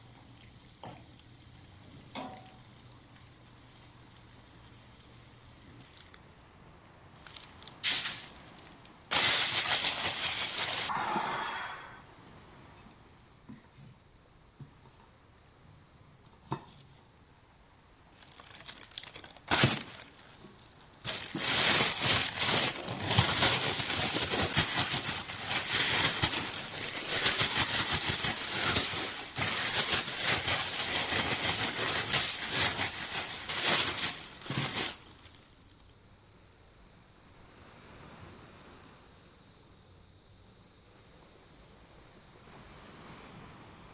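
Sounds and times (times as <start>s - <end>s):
crinkling and rustling: 5.6s - 6.5s, 7.1s - 10.9s, 18.1s - 35.9s.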